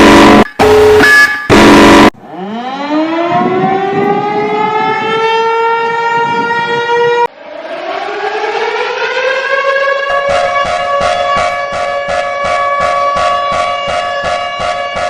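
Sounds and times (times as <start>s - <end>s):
harsh buzzing alarm tones: 0.0s - 3.7s, 10.1s - 15.0s
civil defense siren winding up: 0.0s - 15.0s.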